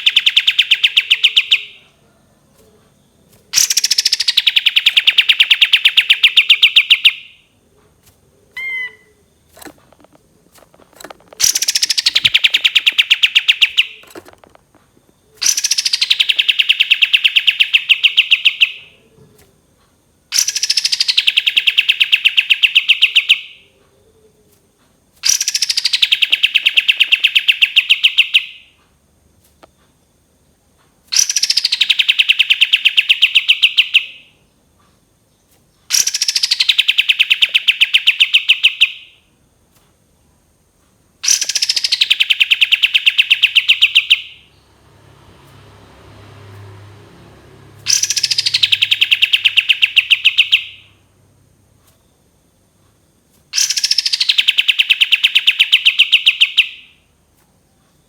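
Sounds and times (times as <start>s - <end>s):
songbird whistling and trilling: 0.0s - 1.8s, 3.6s - 7.3s, 8.6s - 9.3s, 11.4s - 14.0s, 15.4s - 18.9s, 20.4s - 23.6s, 25.2s - 28.6s, 31.2s - 34.2s, 35.9s - 39.1s, 41.2s - 44.4s, 47.9s - 51.0s, 53.6s - 56.9s.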